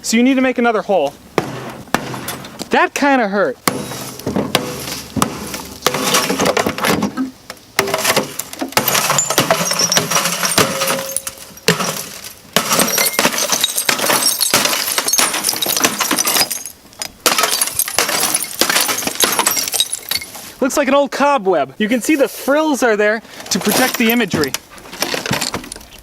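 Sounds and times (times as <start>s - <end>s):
glass breaking and shards clattering: 3.7s - 7.0s, 7.8s - 20.4s, 23.5s - 25.9s.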